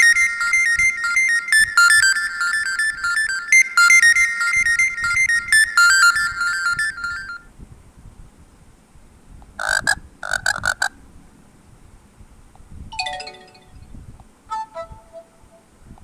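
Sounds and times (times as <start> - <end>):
quick chirps: 0.0 - 7.4
falling run of notes: 13.0 - 13.9, 14.5 - 15.7
melodic phone notification tone: 13.0 - 13.9.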